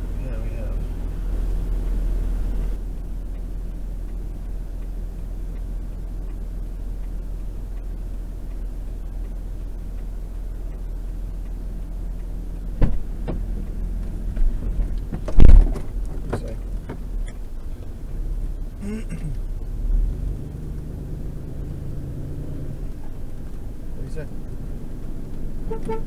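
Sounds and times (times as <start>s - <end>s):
vehicle engine low rumble: 0.0s - 26.0s
knocks and thumps: 12.8s - 17.4s.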